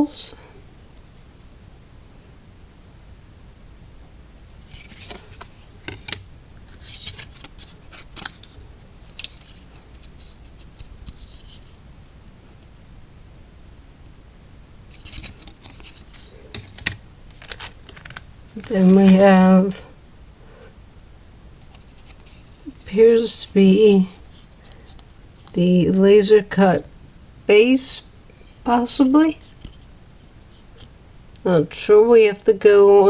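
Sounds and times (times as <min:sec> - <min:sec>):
wooden sheets rustling and clicking: 0:04.6 - 0:11.8, 0:14.9 - 0:19.9, 0:21.6 - 0:25.6.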